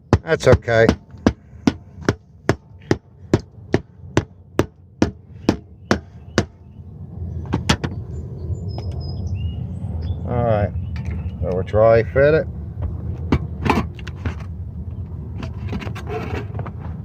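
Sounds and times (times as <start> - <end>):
hammer striking roofing material: 0.0 - 6.6
passing vehicle rumble: 1.4 - 17.0.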